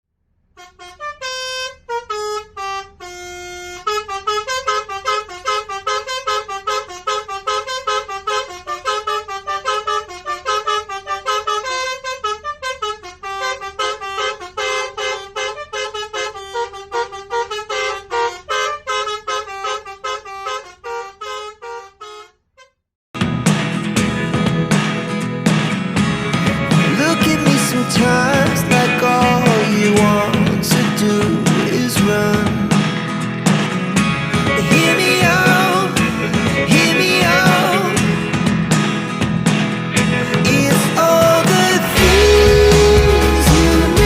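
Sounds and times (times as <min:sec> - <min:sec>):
bus musical horn playing a tune: 0:00.6 - 0:22.8, 0:41.9 - 0:44.0.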